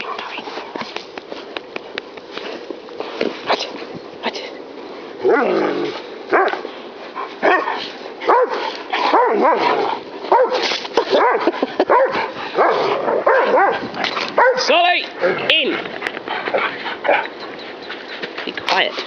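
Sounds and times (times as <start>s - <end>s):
dog barking and yipping: 6.3s - 6.6s, 7.4s - 14.8s.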